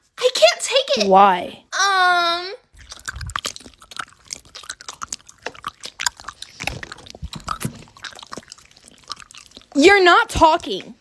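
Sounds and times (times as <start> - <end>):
person chewing crunchy food: 2.7 - 11.0.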